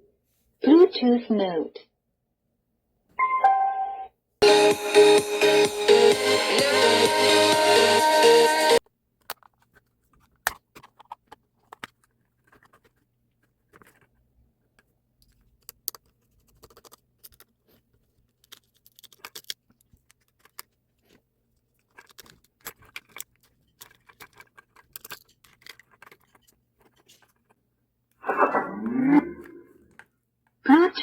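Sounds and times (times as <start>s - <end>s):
music from speaker: 4.4s - 8.8s.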